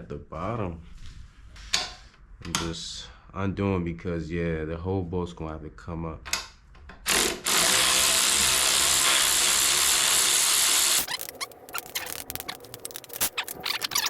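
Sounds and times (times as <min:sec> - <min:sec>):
power tool running: 0:07.1 - 0:11.1
ratchet clicks: 0:11.0 - 0:14.0.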